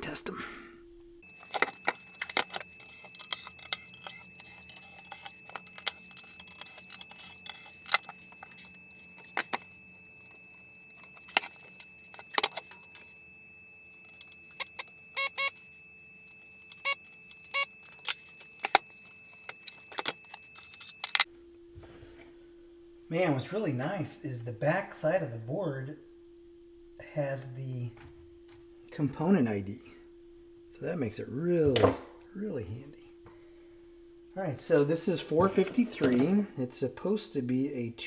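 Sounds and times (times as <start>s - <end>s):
faint steady high tone: 0.0s - 38.0s
metallic clicks and clatter: 1.3s - 9.7s, 14.0s - 15.6s, 16.3s - 21.3s.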